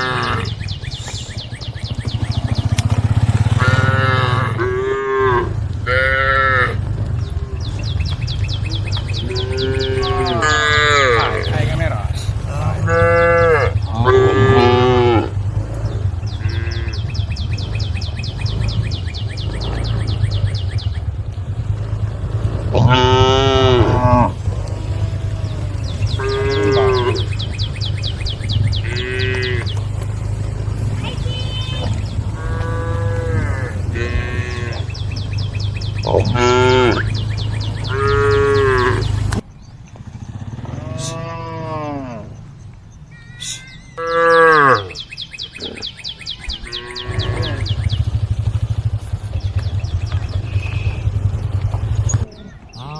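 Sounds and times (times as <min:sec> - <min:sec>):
cow mooing: 0:00.0 - 0:00.6, 0:03.5 - 0:07.8, 0:09.1 - 0:17.7, 0:22.6 - 0:27.5, 0:28.1 - 0:29.8, 0:30.9 - 0:35.3, 0:36.0 - 0:39.2, 0:40.6 - 0:42.4, 0:43.2 - 0:45.0, 0:46.6 - 0:48.0
steady low rumble: 0:00.0 - 0:41.6, 0:45.0 - 0:52.9.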